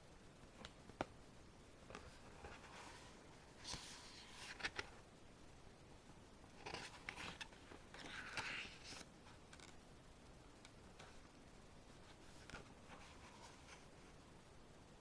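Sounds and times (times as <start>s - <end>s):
paper pages rustling: 1.9s - 4.9s, 6.6s - 9.8s.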